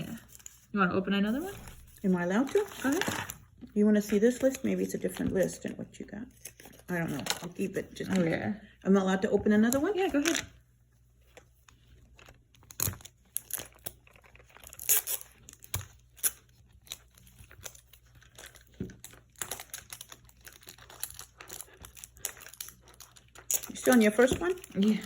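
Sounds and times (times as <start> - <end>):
plastic wrapping torn and crinkled: 12.0 - 25.0.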